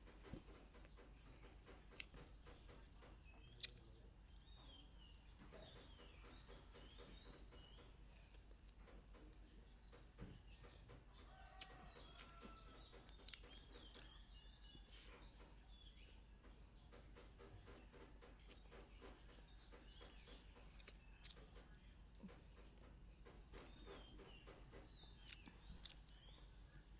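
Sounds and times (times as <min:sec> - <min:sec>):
faint bird calls: 0:00.0 - 0:26.9.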